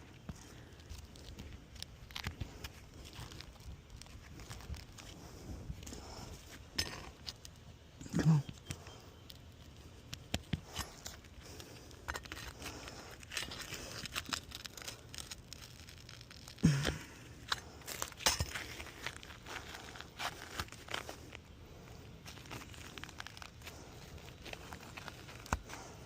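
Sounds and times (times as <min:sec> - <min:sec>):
person grunting: 0:08.0 - 0:08.4, 0:16.6 - 0:17.2.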